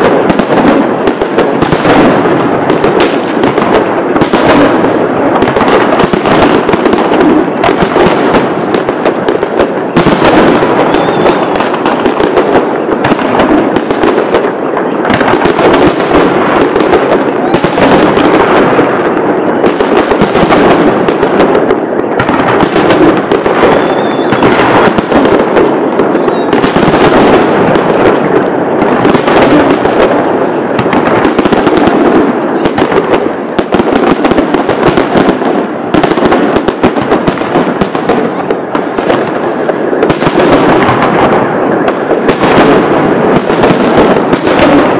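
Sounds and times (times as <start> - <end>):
fireworks bangs and crackles: 0.0 - 44.9
faint firework whistle: 9.8 - 12.0, 19.3 - 19.8, 23.4 - 24.9, 26.0 - 27.0.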